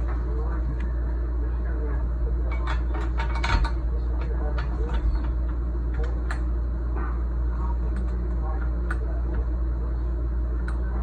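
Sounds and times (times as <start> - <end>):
metal parts clicking and knocking: 2.5 - 6.4.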